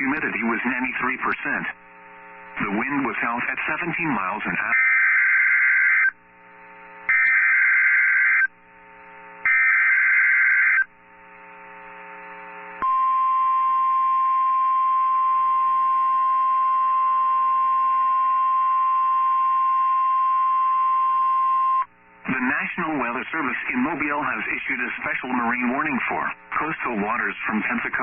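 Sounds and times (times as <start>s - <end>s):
steady warning alarm tone: 4.7s - 6.2s, 7.1s - 8.5s, 9.4s - 10.9s.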